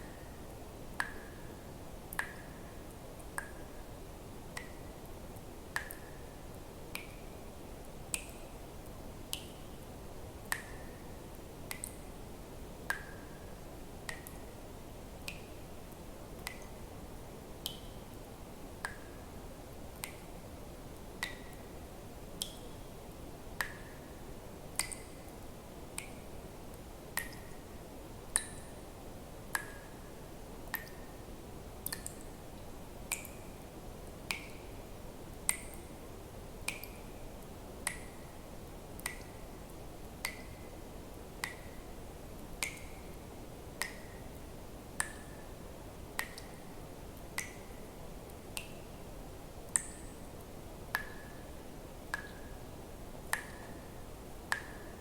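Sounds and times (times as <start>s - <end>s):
faint steady hiss: 0.0s - 55.0s
water drops dripping: 1.0s - 1.4s, 2.1s - 2.6s, 3.2s - 3.8s, 4.5s - 7.3s, 8.1s - 8.5s, 10.4s - 12.1s, 12.9s - 14.6s, 16.4s - 16.8s, 17.6s - 17.9s, 18.8s - 19.2s, 19.9s - 20.3s, 21.2s - 21.7s, 22.4s - 22.8s, 23.6s - 24.1s, 24.7s - 25.4s, 27.2s - 27.6s, 28.3s - 28.8s, 29.5s - 29.9s, 30.6s - 31.1s, 31.8s - 32.4s, 33.1s - 35.9s, 36.6s - 38.3s, 38.9s - 40.6s, 41.4s - 41.9s, 42.6s - 44.4s, 45.0s - 45.4s, 46.2s - 46.6s, 47.2s - 47.7s, 48.4s - 48.9s, 49.7s - 50.2s, 50.9s - 51.5s, 52.1s - 52.6s, 53.2s - 53.8s, 54.5s - 55.0s.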